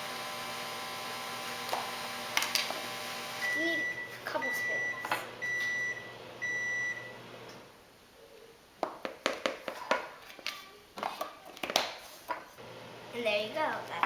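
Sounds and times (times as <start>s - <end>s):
microwave beeping: 0.0s - 7.7s.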